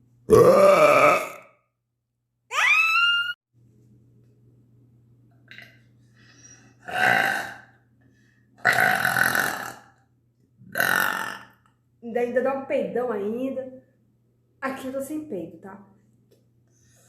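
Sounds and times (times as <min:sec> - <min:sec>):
woman burping loudly: 0:00.3 - 0:01.6, 0:06.8 - 0:07.7, 0:08.6 - 0:09.9, 0:10.7 - 0:11.6
rising vocal squeal: 0:02.5 - 0:03.4.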